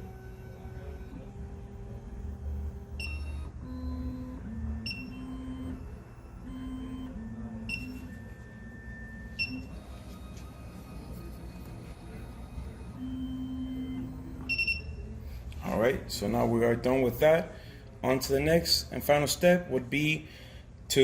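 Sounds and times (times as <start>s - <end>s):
machine motors whining: 0.0s - 15.2s
short electronic beeps: 6.5s - 8.2s, 9.3s - 9.8s, 13.0s - 15.0s.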